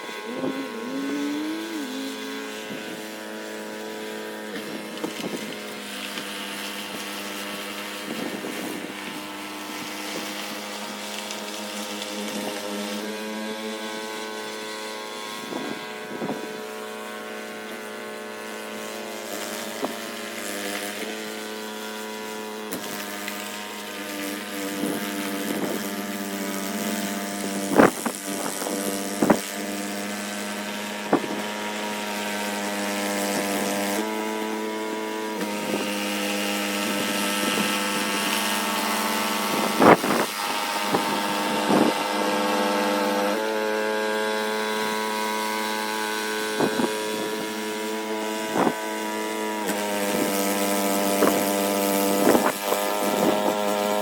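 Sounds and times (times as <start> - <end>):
snowblower engine running: 0.0 - 54.0.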